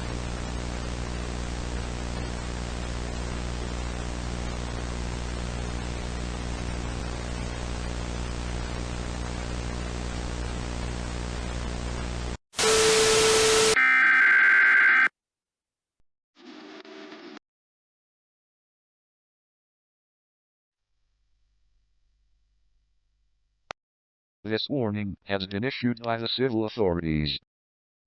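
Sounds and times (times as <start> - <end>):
screeching two-tone digital data burst: 12.6 - 15.1.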